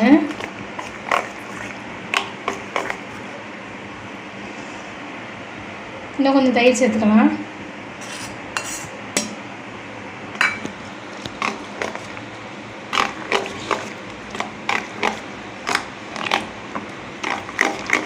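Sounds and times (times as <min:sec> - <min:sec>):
spoon scraping a bowl: 0:00.3 - 0:01.8, 0:02.5 - 0:03.2, 0:08.0 - 0:08.9, 0:13.0 - 0:16.5, 0:17.2 - 0:18.0.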